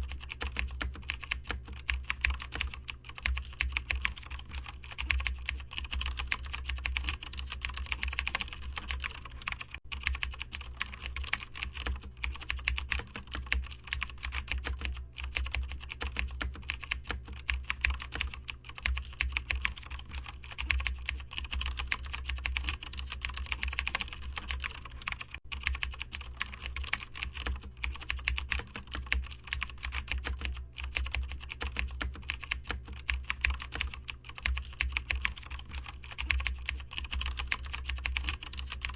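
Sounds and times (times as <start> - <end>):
computer keyboard typing: 0.0 - 38.9.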